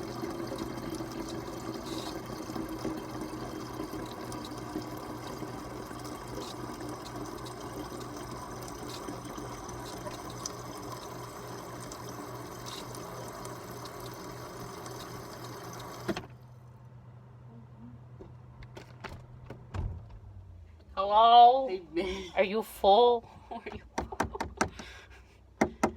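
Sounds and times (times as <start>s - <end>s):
water running into refrigerator: 0.0s - 16.5s.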